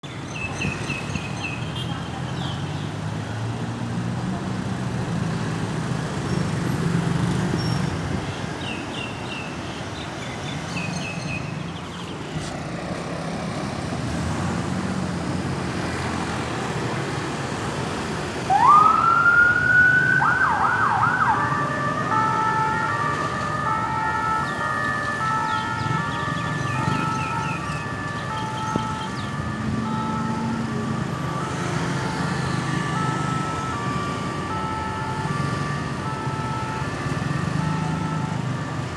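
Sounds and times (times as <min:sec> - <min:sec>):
road traffic noise: 0:00.0 - 0:38.9
ambulance siren wailing: 0:18.4 - 0:38.9.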